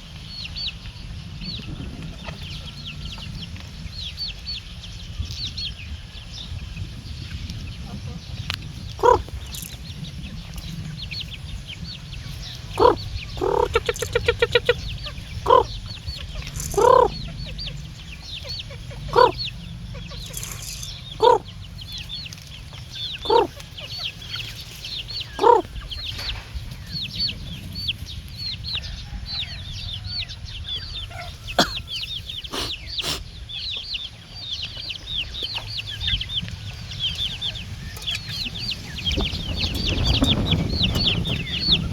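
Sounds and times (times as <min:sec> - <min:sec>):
chicken clucking: 0:01.4 - 0:04.6, 0:07.8 - 0:29.6, 0:30.3 - 0:41.9
high-pitched chirping: 0:15.4 - 0:17.7, 0:18.4 - 0:21.5.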